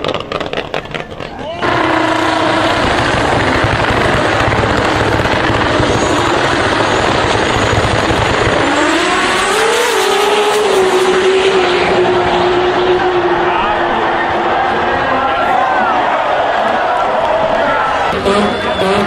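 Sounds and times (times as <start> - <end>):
exhaust pops and bangs: 0.0 - 9.9
car engine revving on launch limiter: 0.0 - 17.1, 17.8 - 19.0.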